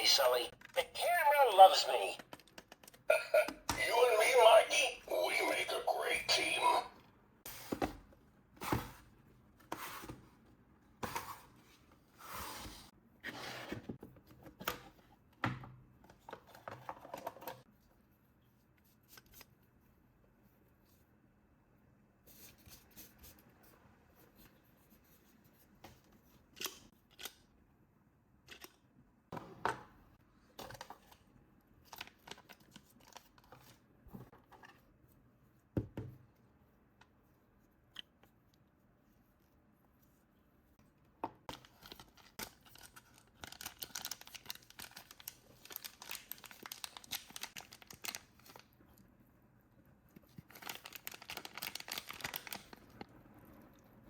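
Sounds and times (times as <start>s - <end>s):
packaging crinkling and tearing: 41.5s - 48.7s, 50.4s - 53.1s.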